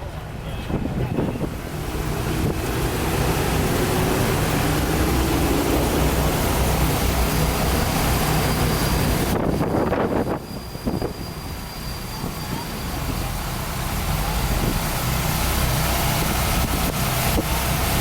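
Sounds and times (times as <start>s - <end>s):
vehicle engine running: 0.0s - 10.8s, 11.4s - 18.0s.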